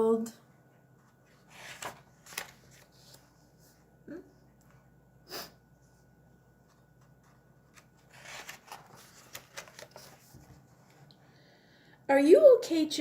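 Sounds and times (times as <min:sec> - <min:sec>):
paper pages rustling: 0:01.0 - 0:03.8, 0:06.6 - 0:11.1.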